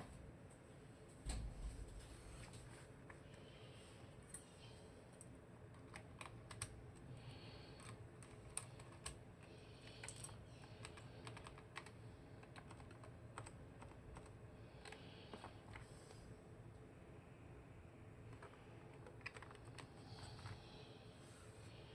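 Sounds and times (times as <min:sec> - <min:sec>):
mechanical keyboard typing: 0:05.8 - 0:06.8, 0:07.8 - 0:09.2, 0:09.9 - 0:15.8, 0:18.3 - 0:20.6.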